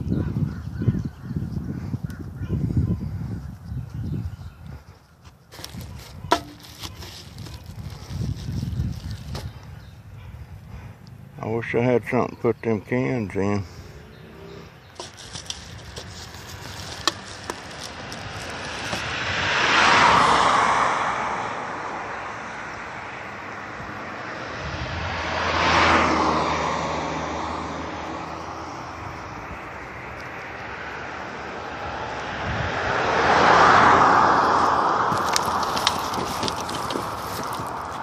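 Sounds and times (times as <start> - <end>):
vehicles passing: 0.0 - 38.0.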